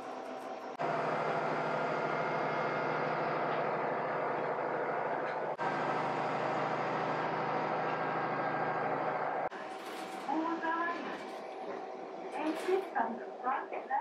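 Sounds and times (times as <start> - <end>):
vehicle engine drone: 0.0 - 10.2.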